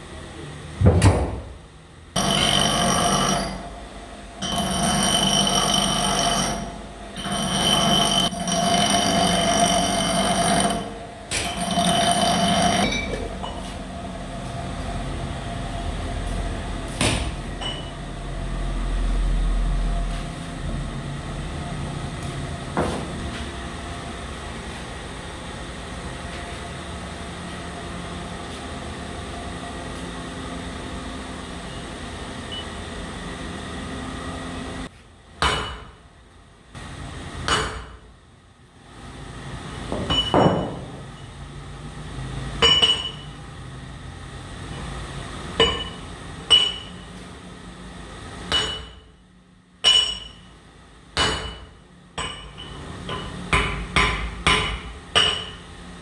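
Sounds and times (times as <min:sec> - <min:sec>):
machine running: 0:02.2 - 0:17.0.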